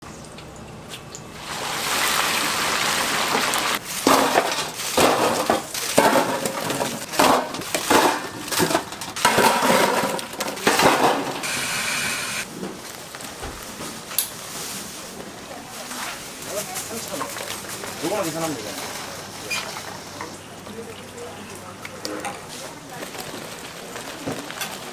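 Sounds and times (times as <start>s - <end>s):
steady noise: 11.4s - 12.5s.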